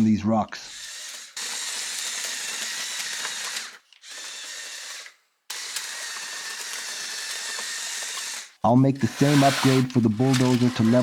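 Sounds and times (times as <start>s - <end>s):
toy excavator motors whirring: 0.6s - 11.0s.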